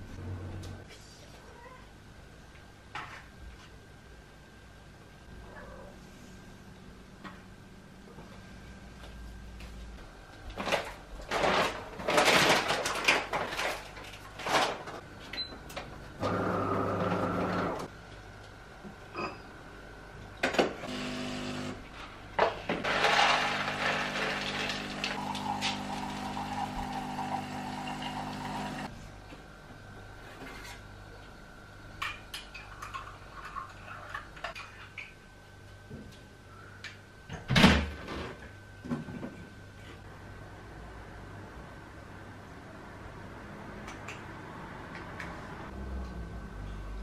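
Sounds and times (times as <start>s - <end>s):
small electric appliance humming: 20.8s - 21.9s, 22.8s - 28.9s.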